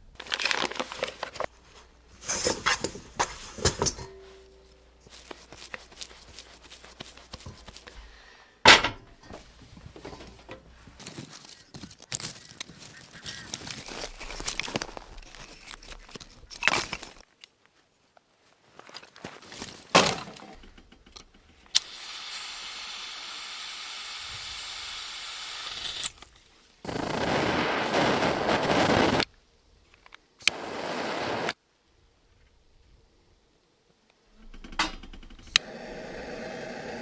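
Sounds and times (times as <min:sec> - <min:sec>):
knocks and clatter of oven parts: 0:08.7 - 0:09.4.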